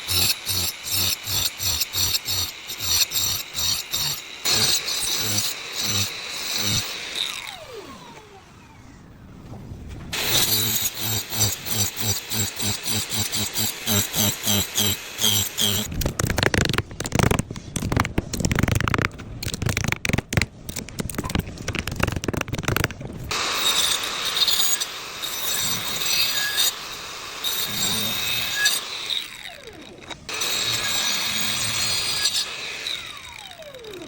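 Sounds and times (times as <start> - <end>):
power tool cutting with whine: 0.0 - 9.0, 10.2 - 15.9, 23.3 - 34.0
knocks and scrapes on wood: 15.6 - 23.3.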